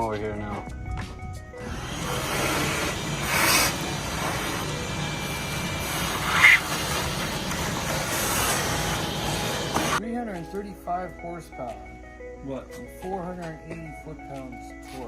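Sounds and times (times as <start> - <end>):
shop vacuum running: 1.6 - 10.0.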